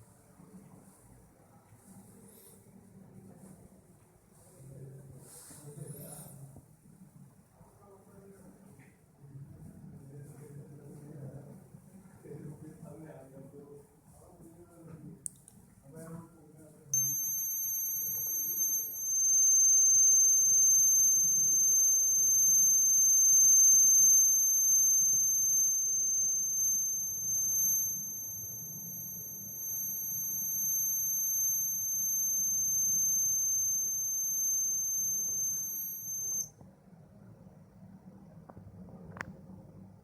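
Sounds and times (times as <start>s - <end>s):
high-pitched alarm buzzer tone: 17.0s - 36.5s.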